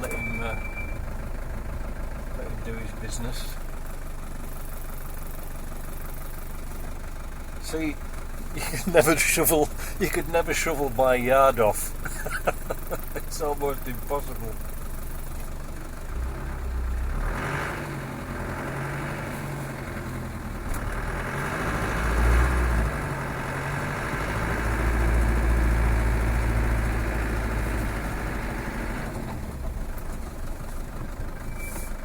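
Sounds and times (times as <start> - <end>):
snowplough truck working: 0.0 - 32.0
vehicle engine idling: 0.0 - 32.0.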